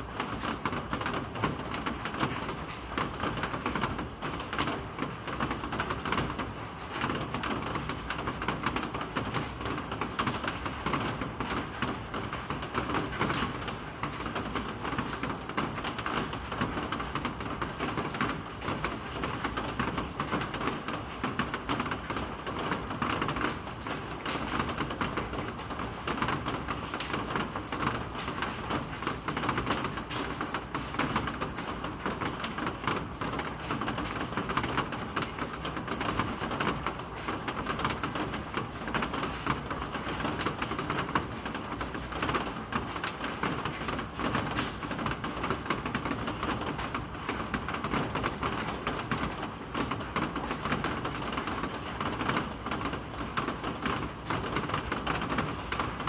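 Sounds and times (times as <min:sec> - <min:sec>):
rain falling: 0:00.0 - 0:56.0.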